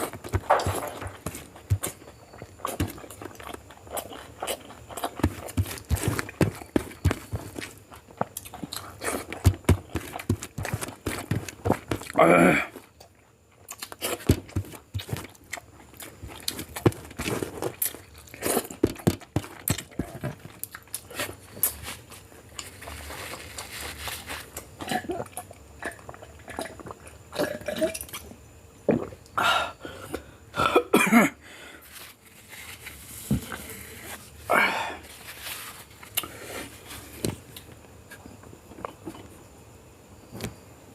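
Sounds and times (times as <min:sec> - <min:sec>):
short crunches: 0:00.0 - 0:13.0
person chewing food: 0:00.0 - 0:29.3, 0:35.6 - 0:39.3.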